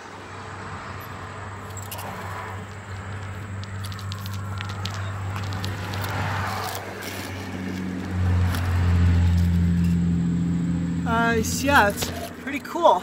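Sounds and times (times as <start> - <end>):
engine humming: 0.0 - 13.0
light scraping and rustling: 1.0 - 10.0, 11.4 - 12.6.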